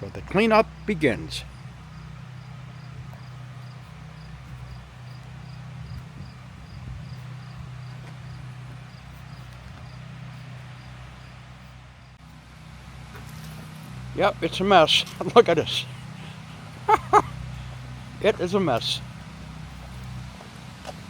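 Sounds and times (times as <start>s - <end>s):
cricket chirping: 1.5s - 10.0s.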